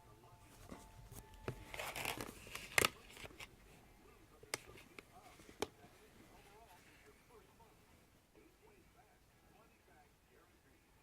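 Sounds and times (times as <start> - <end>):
rustling and crinkling: 0.5 - 3.8.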